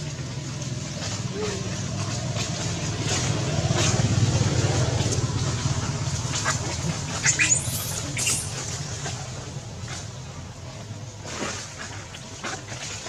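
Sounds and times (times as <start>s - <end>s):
monkey squealing: 7.2s - 8.7s.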